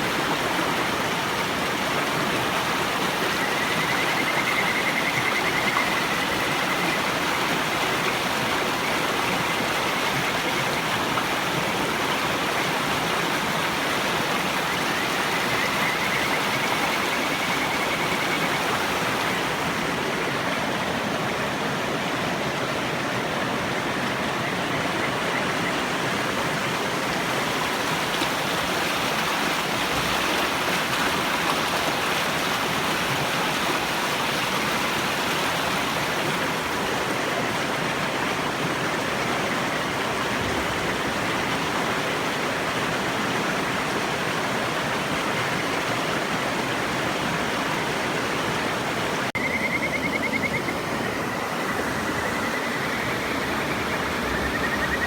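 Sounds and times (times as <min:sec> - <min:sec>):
river rushing: 0:00.0 - 0:55.0
frog trilling call: 0:03.4 - 0:06.8, 0:49.4 - 0:55.0.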